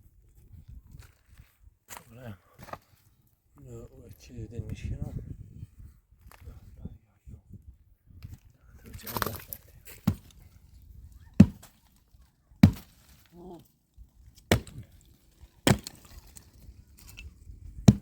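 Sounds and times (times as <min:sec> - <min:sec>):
firewood chopping blows: 0:10.0 - 0:10.4, 0:11.3 - 0:12.0, 0:12.6 - 0:13.7, 0:14.3 - 0:16.4, 0:17.7 - 0:18.0.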